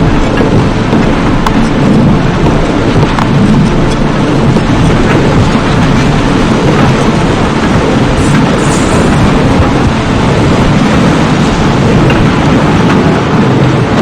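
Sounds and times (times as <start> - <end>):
low thunder-like rumbling: 0.0 - 14.0.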